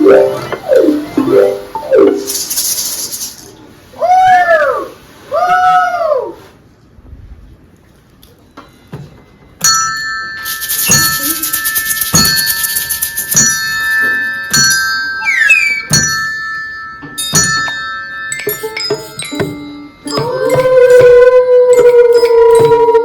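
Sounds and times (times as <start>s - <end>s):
fast high rattle: 2.2s - 3.6s, 10.4s - 14.8s
tuned metal bars ringing: 8.6s - 22.9s.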